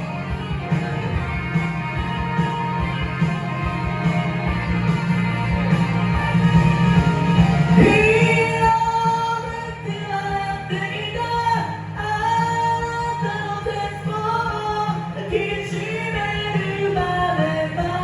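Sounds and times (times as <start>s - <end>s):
rock band backing track: 0.0s - 18.0s
person singing: 7.7s - 18.0s.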